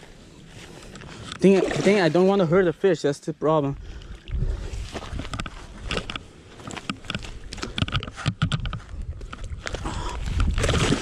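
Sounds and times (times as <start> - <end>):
irregular knocks and clicks: 5.3 - 9.4.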